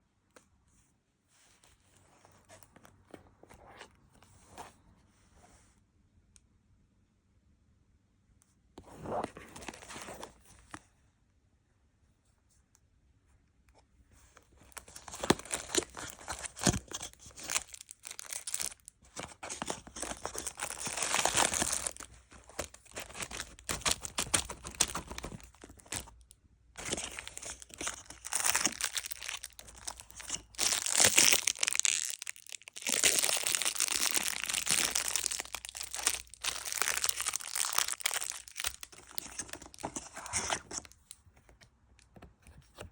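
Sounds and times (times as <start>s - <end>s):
packaging tearing and crinkling: 14.7s - 26.2s, 26.8s - 40.9s.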